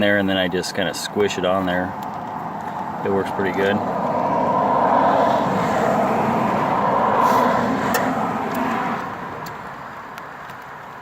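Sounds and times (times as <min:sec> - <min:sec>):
vehicle passing with rushing noise: 0:01.4 - 0:10.1.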